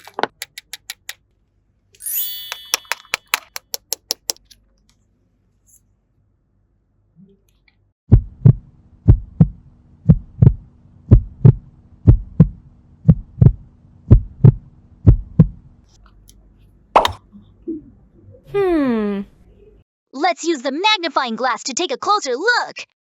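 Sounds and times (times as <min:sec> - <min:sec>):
electronic heartbeat thumps: 0:08.1 - 0:15.6.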